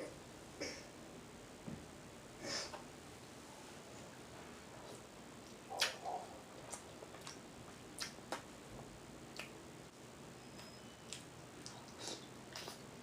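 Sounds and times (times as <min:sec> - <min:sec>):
mouth chewing smacks: 0:04.8 - 0:07.4, 0:08.0 - 0:08.4, 0:09.3 - 0:09.6, 0:11.1 - 0:12.8.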